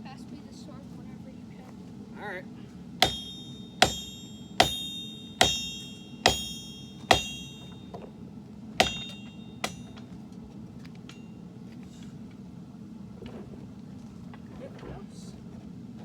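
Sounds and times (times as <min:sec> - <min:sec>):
steady low hum: 0:00.0 - 0:16.0
hammer striking steel on anvil: 0:03.0 - 0:08.1, 0:08.8 - 0:10.2.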